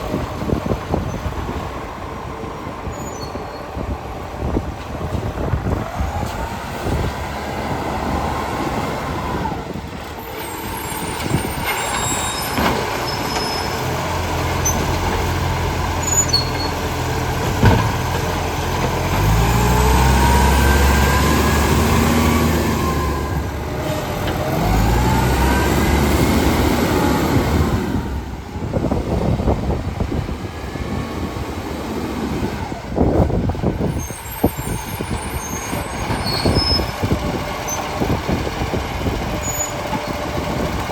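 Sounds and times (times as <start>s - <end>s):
garbage truck diesel engine: 0.0s - 40.9s
hydraulic whines: 9.0s - 15.2s, 16.0s - 16.9s, 33.8s - 38.1s.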